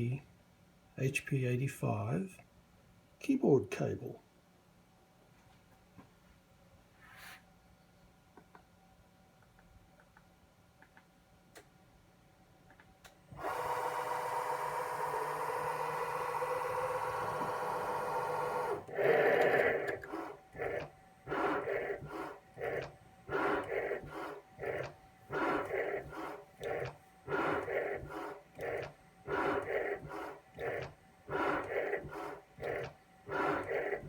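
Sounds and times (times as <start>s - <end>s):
milling machine running: 13.3s - 34.0s
machine short repeated strokes: 13.4s - 34.0s.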